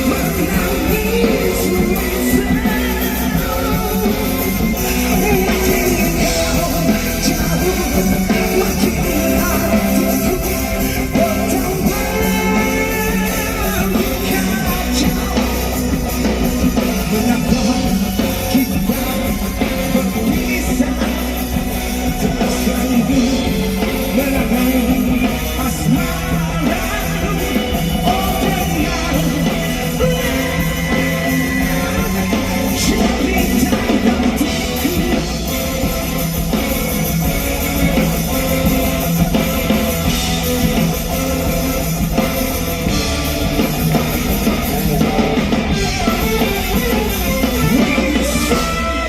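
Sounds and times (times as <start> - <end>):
person singing: 0.0 - 36.5
electric guitar: 0.0 - 49.0
live rock band playing: 0.0 - 49.0.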